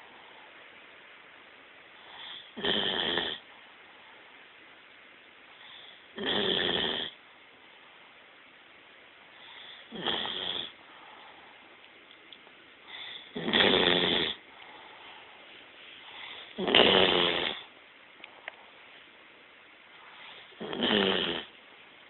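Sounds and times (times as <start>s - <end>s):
dog snoring: 2.0s - 3.4s, 5.6s - 7.2s, 9.4s - 10.8s, 12.9s - 14.4s, 16.1s - 17.7s, 20.2s - 21.5s.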